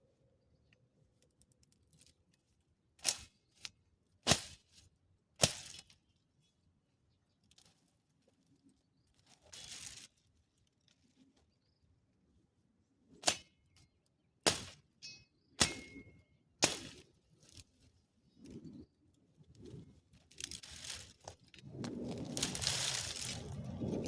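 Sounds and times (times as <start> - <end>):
brief rustle: 9.2 - 10.2, 19.6 - 24.0.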